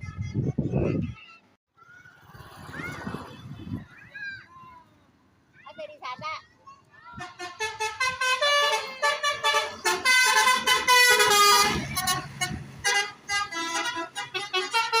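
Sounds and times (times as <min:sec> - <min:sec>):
multi-tone bus horn tune: 0:07.2 - 0:15.0.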